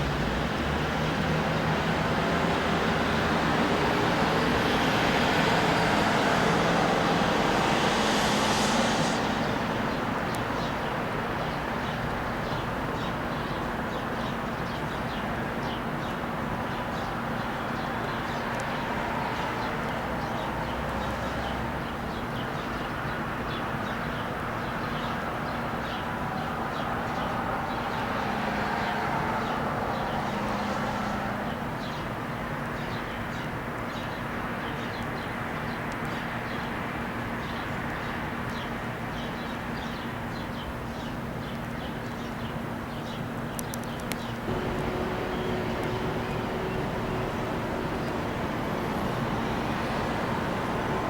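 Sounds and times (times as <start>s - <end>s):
birds chirping: 43.6s - 51.0s.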